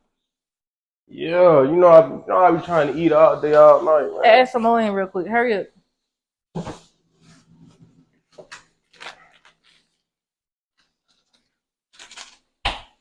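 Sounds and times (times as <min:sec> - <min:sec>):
rustling and tearing: 0:08.4 - 0:10.1, 0:10.8 - 0:12.5.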